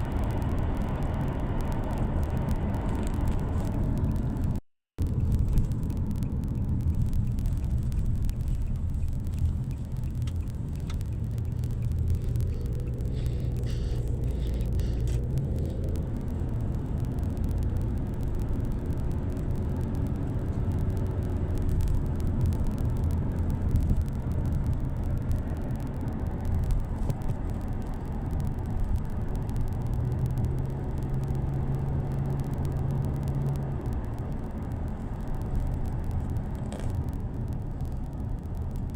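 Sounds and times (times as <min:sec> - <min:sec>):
road vehicle rumbling: 0:00.0 - 0:38.9.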